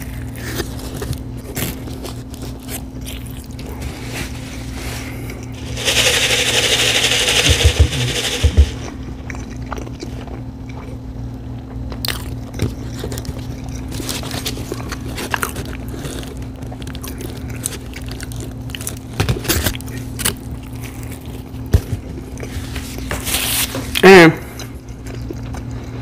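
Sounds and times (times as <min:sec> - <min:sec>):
person chewing and biting food: 0:00.0 - 0:05.6, 0:08.2 - 0:23.1, 0:23.9 - 0:26.0
low hum: 0:00.9 - 0:11.7.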